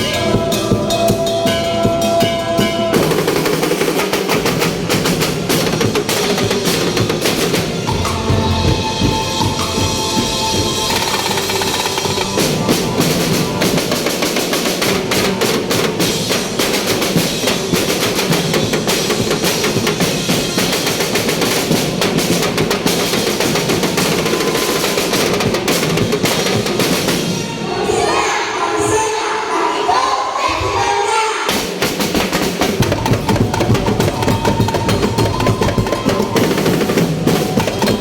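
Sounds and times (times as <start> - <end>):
snare drums playing: 3.0 - 27.4, 31.5 - 38.0
bass drums playing: 4.4 - 14.1.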